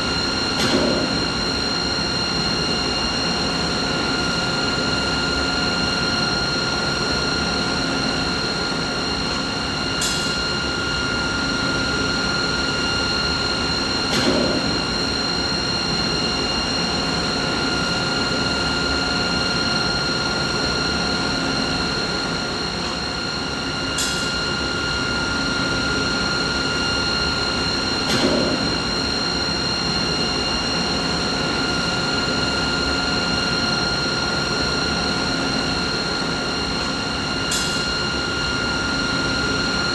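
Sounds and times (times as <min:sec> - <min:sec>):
machinery whine and hum: 0:00.0 - 0:39.9.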